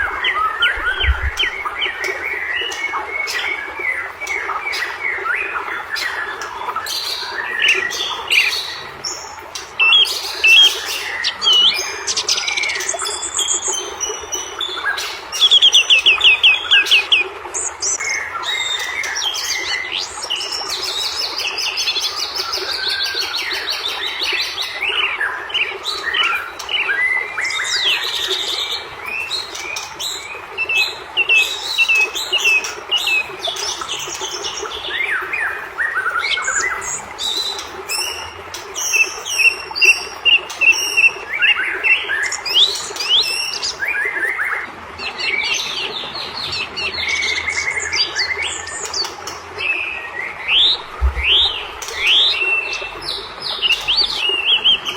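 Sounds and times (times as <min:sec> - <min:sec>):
bird singing whistles and trills: 0:00.0 - 0:05.3, 0:50.5 - 0:54.9.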